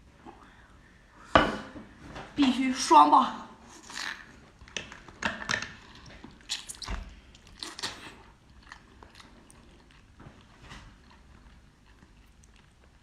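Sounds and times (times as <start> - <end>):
chewing with clicks: 6.0 - 13.0.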